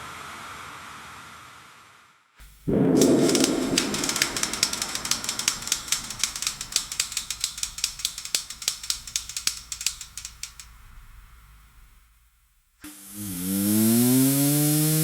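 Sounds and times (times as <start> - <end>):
metallic clicking and clattering: 2.7 - 11.1.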